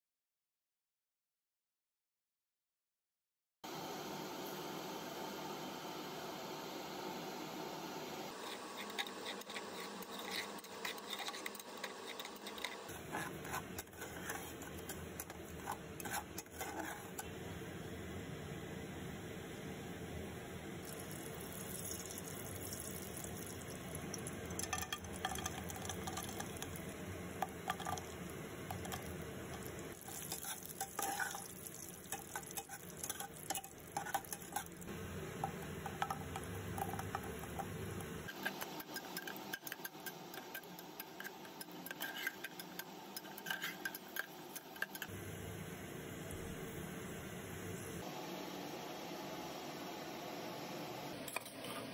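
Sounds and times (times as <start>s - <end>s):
spoon scraping in cooking pan: 8.3s - 17.4s, 20.8s - 45.1s.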